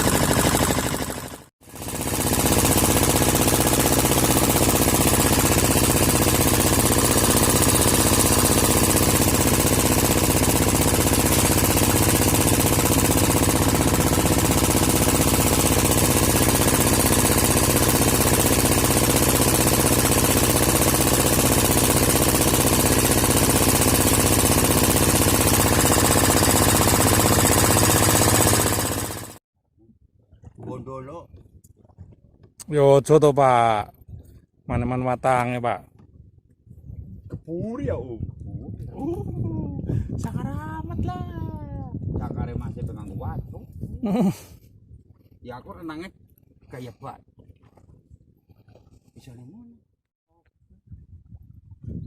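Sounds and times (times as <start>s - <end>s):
engine running with knocking: 0.0s - 29.4s.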